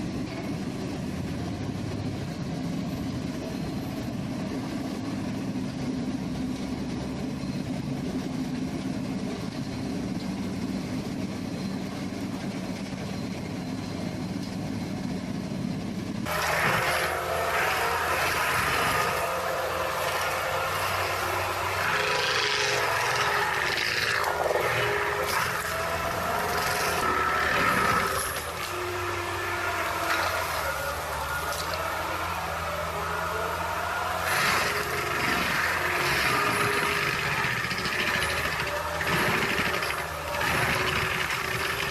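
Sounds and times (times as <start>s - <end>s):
heavy equipment engine running: 0.0s - 41.9s
high mechanical whines: 16.1s - 41.9s
rough noise: 16.3s - 41.9s.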